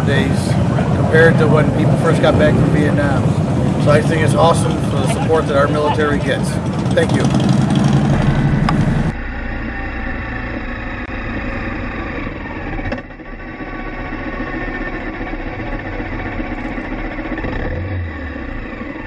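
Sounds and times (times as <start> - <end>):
motorcycle engines passing: 0.0 - 13.0.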